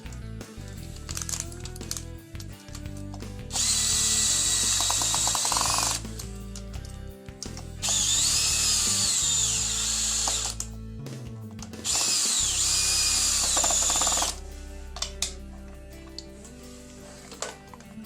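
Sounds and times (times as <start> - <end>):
power drill whining: 3.5 - 6.3, 7.8 - 10.7, 11.8 - 14.4.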